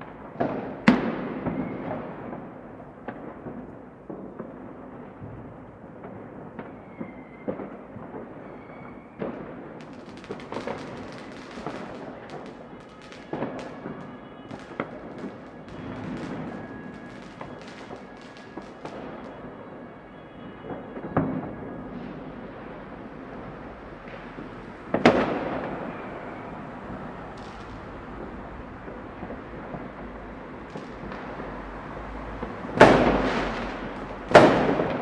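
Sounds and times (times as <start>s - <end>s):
firecrackers crackling: 0.0s - 35.0s
fireworks booming and popping: 0.0s - 35.0s
rumble of distant explosions: 0.0s - 35.0s
loud firework bang: 9.2s - 19.6s, 24.0s - 35.0s.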